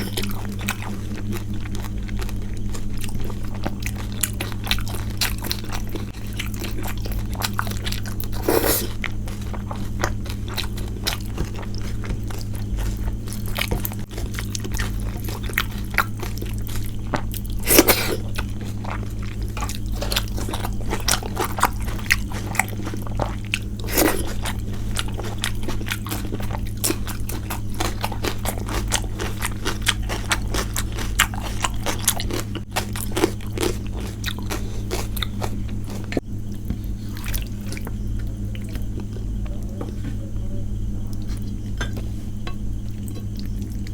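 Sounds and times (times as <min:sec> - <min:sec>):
low hum: 0:00.0 - 0:43.9
wet chewing and smacking: 0:00.0 - 0:43.9
sharp crunches: 0:07.4 - 0:18.8, 0:23.8 - 0:37.8.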